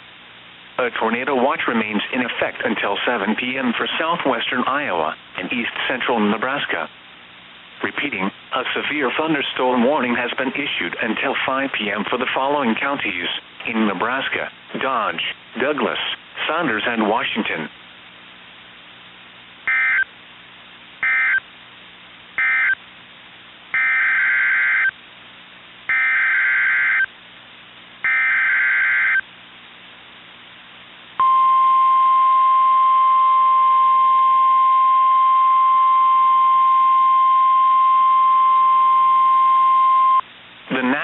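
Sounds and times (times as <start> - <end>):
faint radio hiss: 0.0 - 23.8, 24.9 - 25.9, 27.0 - 28.1, 29.1 - 31.2, 39.0 - 41.0
steady warning alarm tone: 19.7 - 20.1, 21.0 - 21.4, 22.4 - 22.8, 23.8 - 24.9, 25.9 - 27.1, 28.0 - 29.2.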